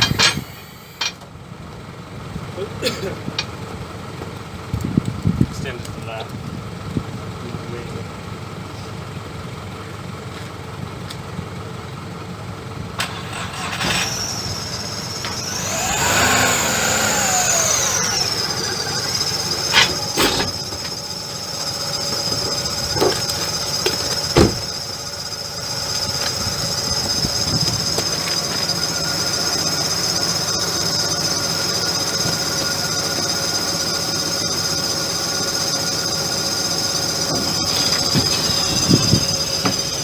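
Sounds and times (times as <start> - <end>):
high hydraulic whine: 0.0 - 1.2, 13.0 - 40.0
diesel engine running: 0.0 - 40.0.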